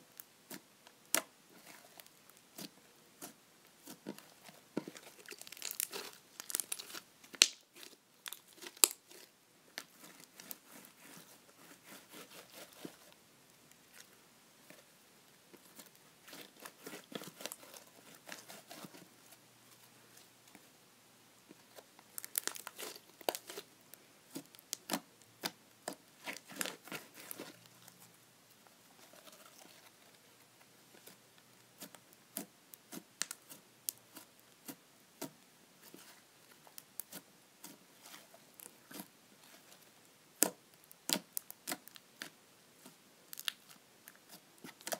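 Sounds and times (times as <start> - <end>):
slime squished by hand crackling: 4.8 - 12.8, 22.2 - 23.7.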